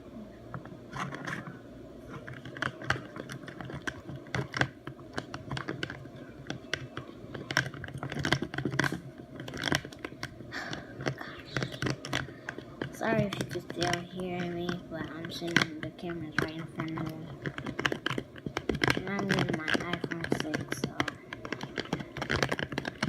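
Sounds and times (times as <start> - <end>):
spoon stirring in container: 0.9 - 10.3.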